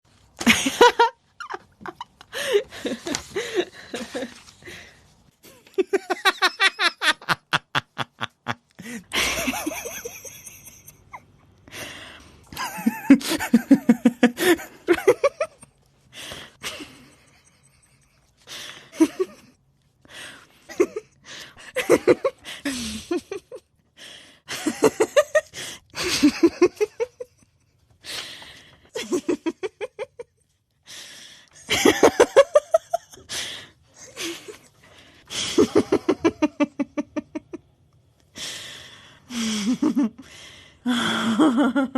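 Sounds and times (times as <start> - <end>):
people laughing and giggling: 0.4 - 4.6, 5.4 - 11.2, 12.5 - 15.7, 24.5 - 27.7, 31.6 - 33.3, 35.3 - 37.6.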